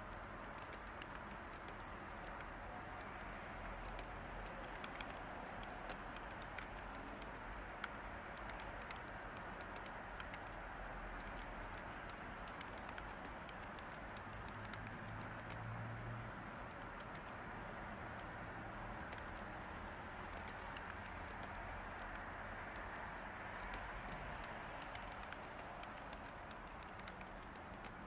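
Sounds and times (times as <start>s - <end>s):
typing on computer keyboard: 0.0s - 28.0s
white noise hiss: 0.0s - 28.0s.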